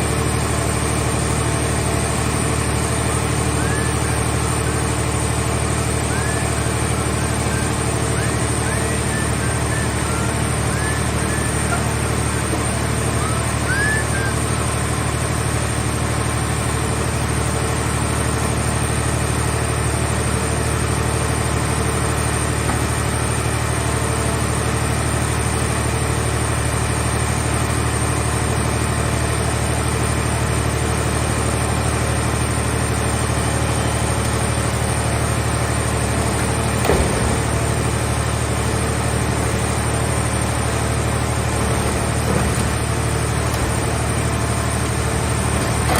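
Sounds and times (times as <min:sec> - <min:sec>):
baler engine running: 0:00.0 - 0:45.9
faint high whine: 0:05.8 - 0:15.2.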